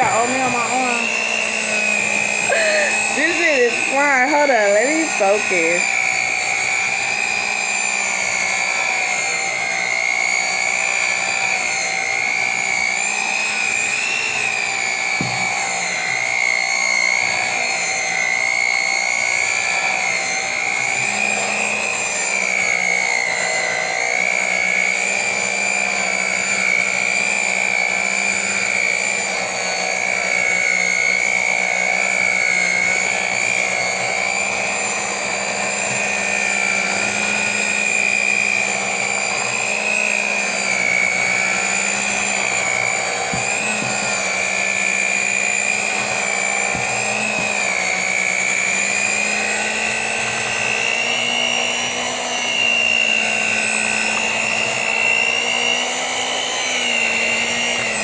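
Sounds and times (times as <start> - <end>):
electric hand mixer whining: 0.0 - 58.0.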